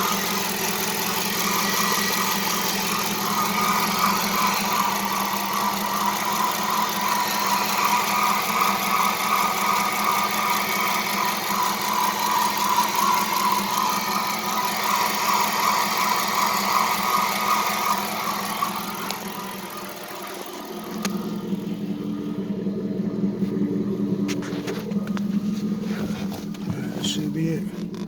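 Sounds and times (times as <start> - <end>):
belt pulley squealing: 0.0 - 21.6
car engine idling: 0.0 - 28.0.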